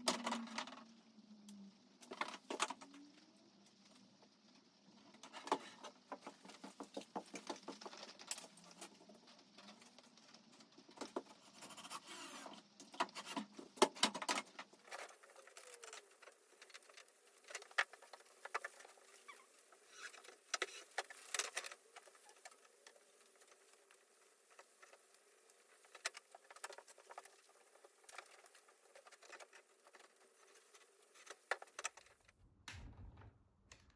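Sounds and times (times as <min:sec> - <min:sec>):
low hum: 0:32.3 - 0:33.9.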